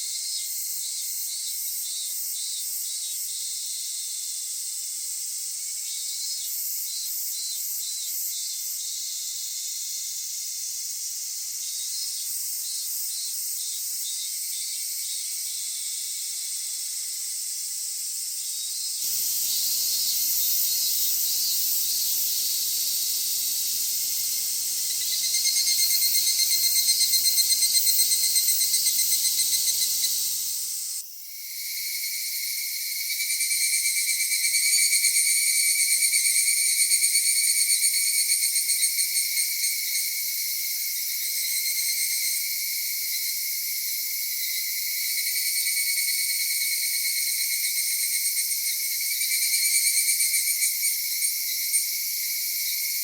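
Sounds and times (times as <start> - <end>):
cicadas chorusing: 0.0 - 53.0
rapidly pulsing cicada call: 0.0 - 53.0.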